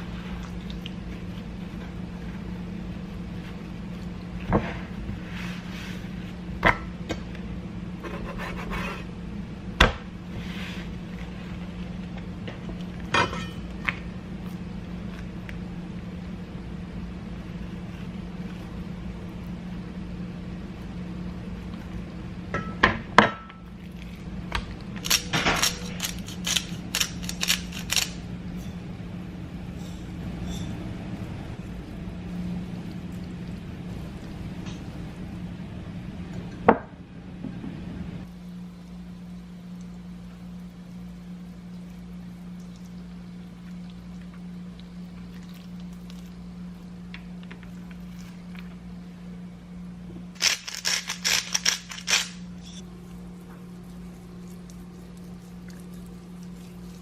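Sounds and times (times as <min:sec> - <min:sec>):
steady low hum: 0:00.0 - 0:57.0
utensils clinking against dishes: 0:13.1 - 0:13.6, 0:29.7 - 0:30.8.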